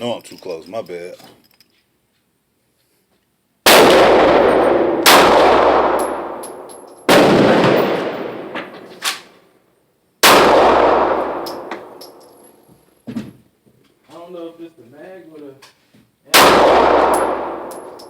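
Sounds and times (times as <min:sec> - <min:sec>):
pistol shots echoing: 0:03.7 - 0:09.3, 0:10.2 - 0:12.3, 0:16.3 - 0:18.0
small metallic tinkles: 0:11.4 - 0:12.7, 0:17.7 - 0:18.0.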